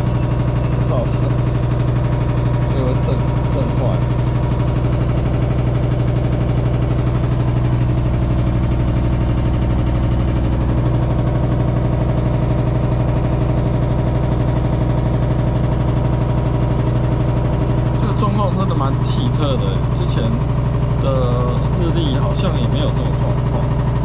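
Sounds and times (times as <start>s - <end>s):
buzzing rattle inside tub: 0.0s - 24.0s
washing machine spinning: 0.0s - 24.0s.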